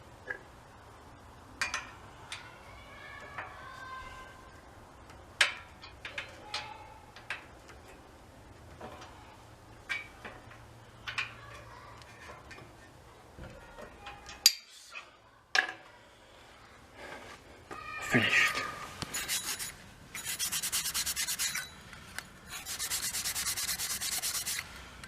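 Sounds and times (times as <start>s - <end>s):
metal tools clinking: 21.2s - 22.0s.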